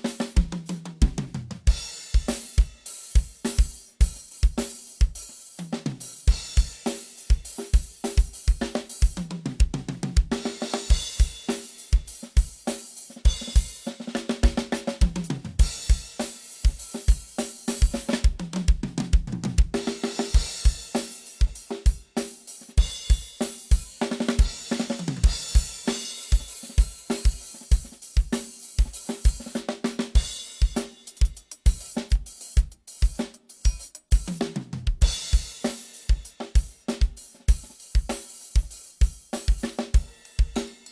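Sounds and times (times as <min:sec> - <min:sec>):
snare drum: 0:00.0 - 0:40.9
hi-hat: 0:25.3 - 0:34.4, 0:35.0 - 0:40.9.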